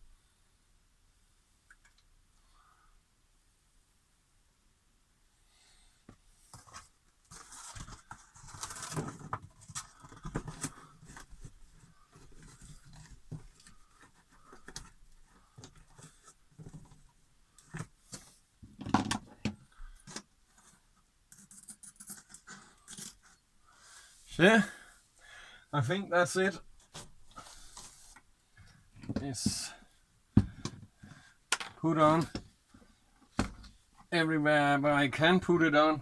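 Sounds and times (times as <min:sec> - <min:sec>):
insulation rustling and scraping: 0:06.4 - 0:23.4, 0:26.2 - 0:29.8.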